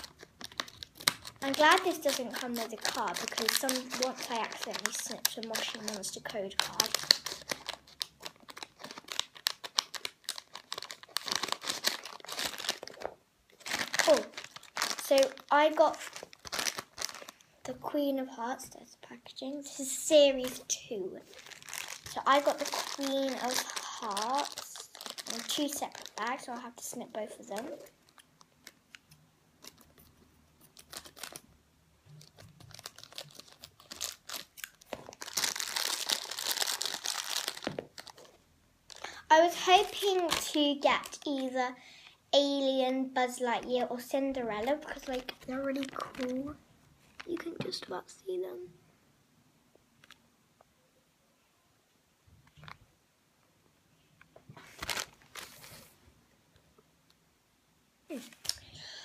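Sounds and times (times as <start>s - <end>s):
plastic bags crinkling: 0.0s - 17.5s, 20.4s - 41.4s, 44.4s - 47.8s, 54.6s - 56.0s
plastic packaging crackling: 0.0s - 17.5s, 19.6s - 41.6s, 43.6s - 48.0s, 54.5s - 56.0s.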